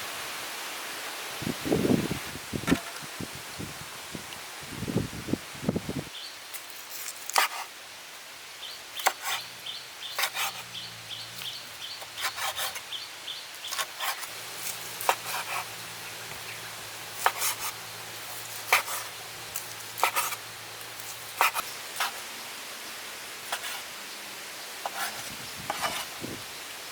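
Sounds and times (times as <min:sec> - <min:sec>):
knife scraping on board: 0:06.9 - 0:07.7, 0:09.0 - 0:09.4, 0:10.2 - 0:10.7, 0:11.4 - 0:12.8, 0:13.7 - 0:15.8, 0:17.1 - 0:22.2, 0:23.5 - 0:23.8, 0:24.8 - 0:26.1.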